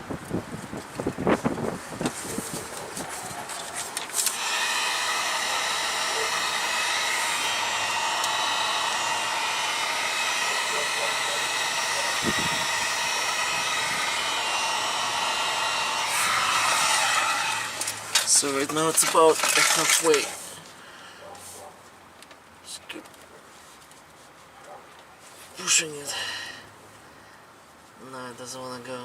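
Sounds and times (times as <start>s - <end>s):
heat gun blowing with whine: 1.1s - 20.4s.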